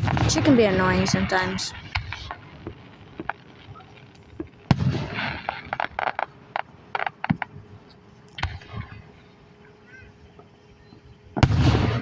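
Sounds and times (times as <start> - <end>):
firework bursts: 0.0 - 9.2, 11.4 - 12.0
crackling firework pops: 1.8 - 9.0, 11.4 - 12.0.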